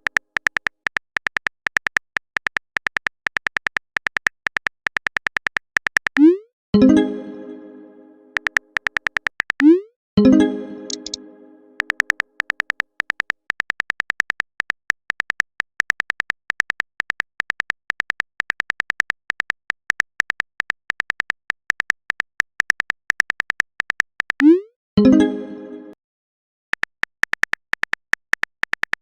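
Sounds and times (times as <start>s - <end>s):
phone keyboard typing taps: 0.0s - 6.4s, 8.4s - 9.8s, 10.9s - 11.2s, 11.8s - 24.6s, 26.8s - 29.0s
message chime: 6.2s - 8.5s, 9.6s - 12.0s, 25.0s - 26.0s.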